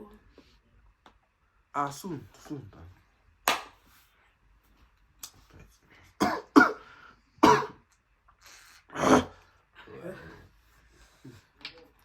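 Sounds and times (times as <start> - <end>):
person coughing: 6.2 - 6.8, 7.4 - 7.8, 9.0 - 9.4.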